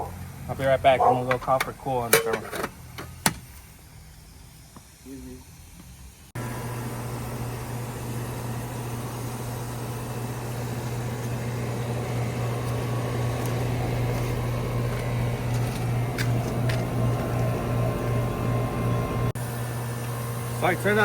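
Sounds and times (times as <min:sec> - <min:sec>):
air conditioner unit humming: 0:06.4 - 0:21.0.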